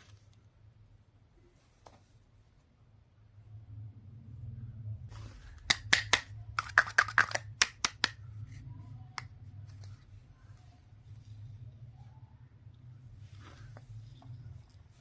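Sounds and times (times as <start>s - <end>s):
small hard objects clicking: 5.7s - 8.2s.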